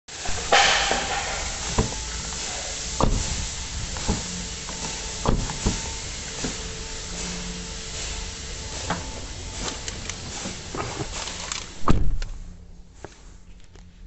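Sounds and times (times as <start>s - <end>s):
steady hiss: 0.1s - 13.6s
door knocks and clunks: 11.8s - 12.2s.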